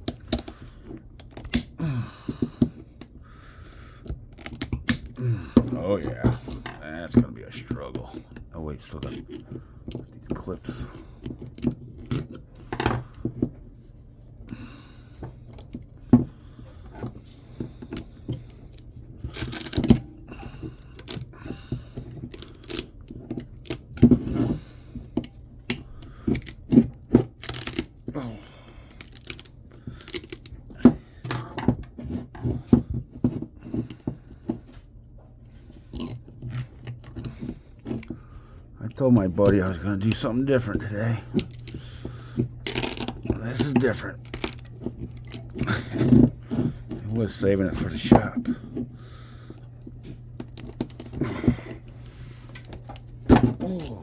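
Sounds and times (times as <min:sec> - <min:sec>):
coils tearing loose: 0:00.0 - 0:13.1, 0:17.0 - 0:24.8, 0:25.7 - 0:28.2, 0:28.8 - 0:31.0, 0:41.2 - 0:54.0
hand tools clicking and scraping metal: 0:00.0 - 0:34.8, 0:39.0 - 0:54.0.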